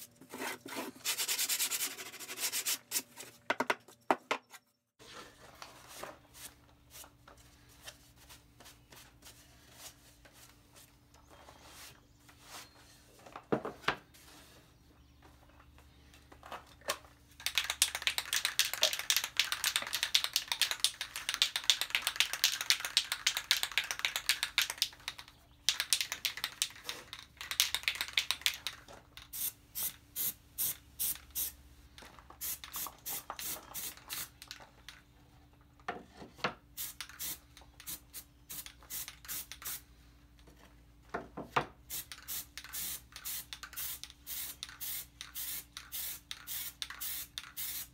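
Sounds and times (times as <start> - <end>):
hand sanding strokes: 0.3 - 3.1.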